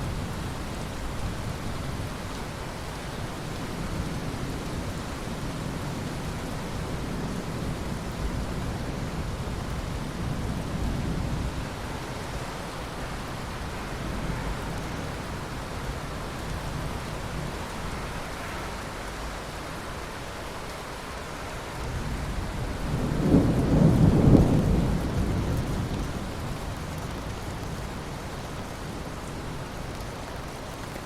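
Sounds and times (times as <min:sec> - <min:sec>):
distant thunder rumble: 0:22.0 - 0:27.0.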